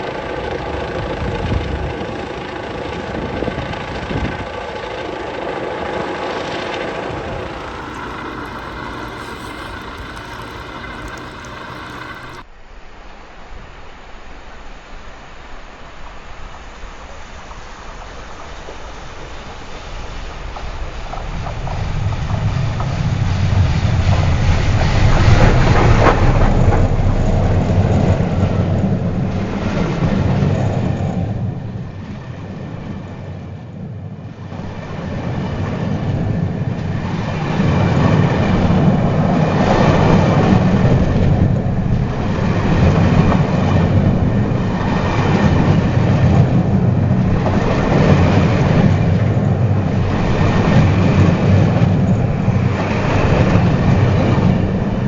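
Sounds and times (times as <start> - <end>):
steam train passing: 5.2 - 12.4.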